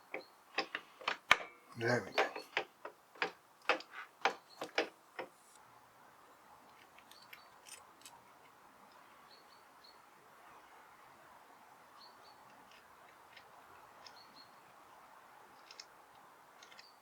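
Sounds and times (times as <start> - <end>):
birds chirping: 1.6 - 2.5.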